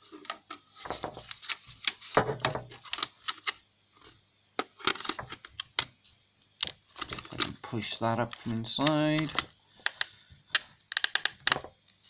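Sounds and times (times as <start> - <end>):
plastic casing clicks and knocks: 0.3 - 3.6, 8.3 - 11.8.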